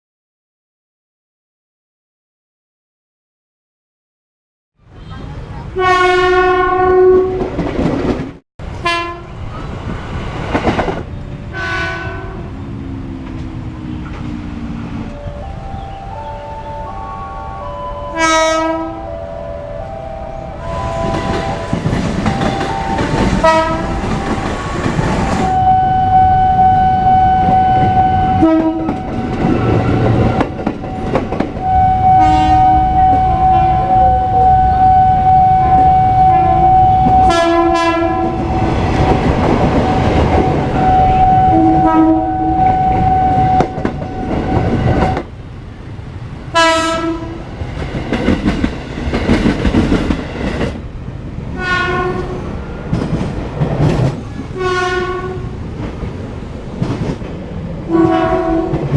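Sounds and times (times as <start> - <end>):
trains rumbling on rails: 4.8 - 58.9
train horn blasts: 4.9 - 7.7, 8.7 - 9.5, 11.5 - 12.7, 15.1 - 45.3, 46.5 - 47.5, 51.6 - 53.0, 54.5 - 55.6, 57.9 - 58.9.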